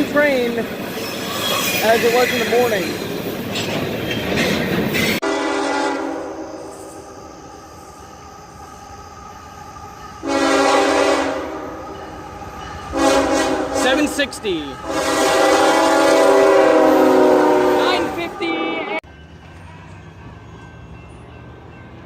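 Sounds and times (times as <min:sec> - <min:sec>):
train rumbling on rails: 0:00.0 - 0:22.0
locomotive air horn: 0:05.2 - 0:06.7, 0:10.2 - 0:11.8, 0:12.9 - 0:14.0, 0:14.8 - 0:19.0.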